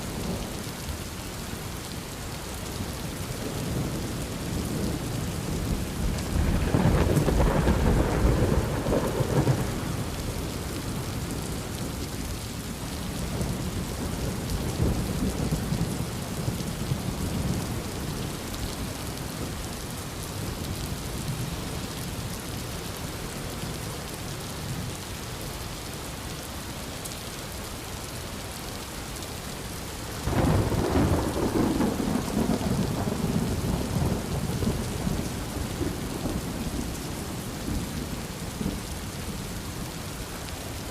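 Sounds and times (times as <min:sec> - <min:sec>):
heavy rain: 0:00.0 - 0:40.9
thunder rolling: 0:06.0 - 0:10.6, 0:30.3 - 0:36.7.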